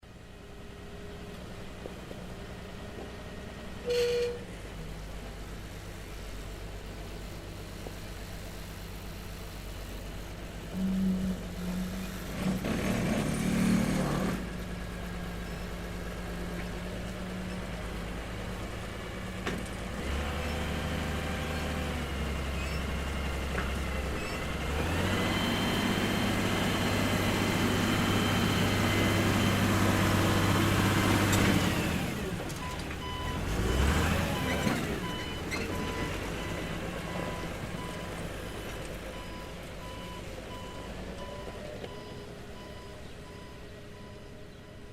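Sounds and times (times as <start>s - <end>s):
diesel engine revving: 8.9s - 44.9s
reversing beeps: 32.6s - 33.5s, 34.2s - 38.1s, 39.1s - 44.9s.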